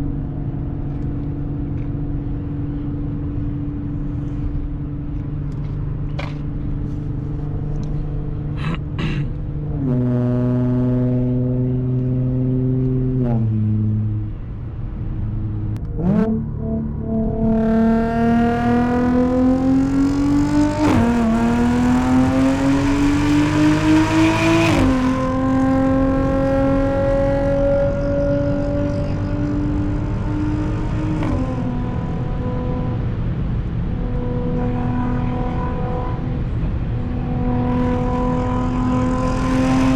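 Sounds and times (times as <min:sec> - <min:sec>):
car engine accelerating with upshifts: 0:00.0 - 0:39.9.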